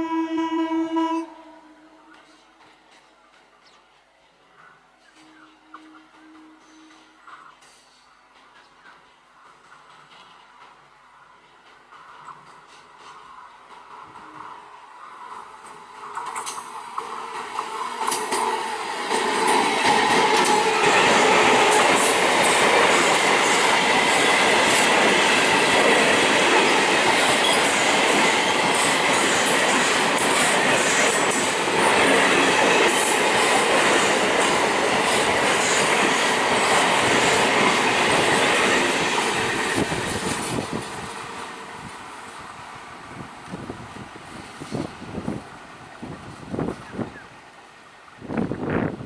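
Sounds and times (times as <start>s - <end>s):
train wheel squeal: 4.5s - 9.0s, 16.0s - 34.1s
train clattering over rail joints: 7.6s - 14.6s, 15.3s - 42.4s.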